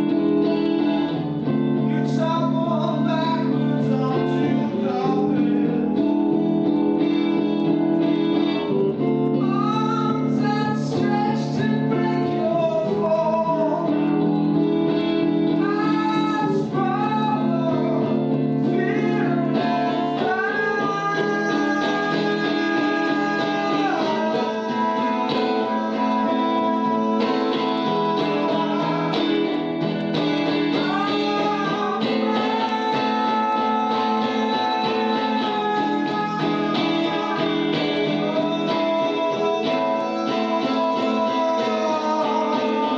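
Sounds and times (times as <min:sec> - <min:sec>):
acoustic guitar: 0:00.0 - 0:42.9
woman singing slow song: 0:09.4 - 0:14.0, 0:15.6 - 0:42.9.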